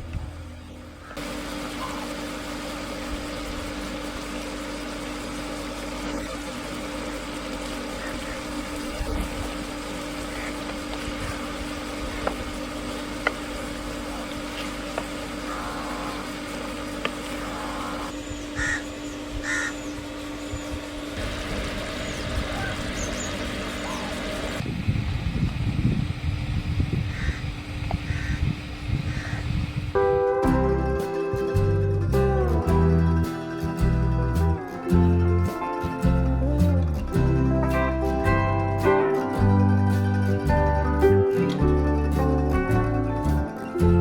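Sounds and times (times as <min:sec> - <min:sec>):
steady low hum: 0:00.0 - 0:44.0
short calls: 0:15.3 - 0:20.6.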